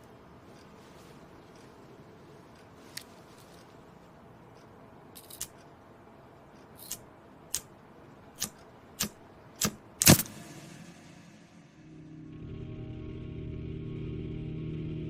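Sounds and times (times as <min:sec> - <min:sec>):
sharp clicks or knocks: 0:08.4 - 0:10.9.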